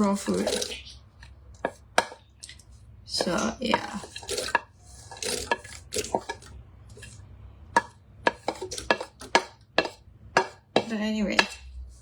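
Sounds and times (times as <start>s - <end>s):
utensil scraping cookware: 0.0s - 0.9s, 3.1s - 7.2s, 7.8s - 12.0s.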